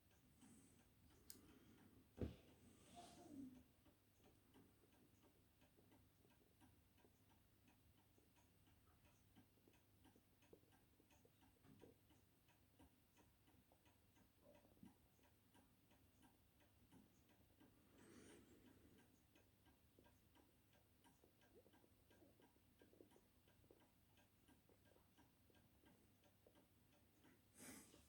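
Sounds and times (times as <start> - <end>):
faint regular ticking: 0.0 - 28.0.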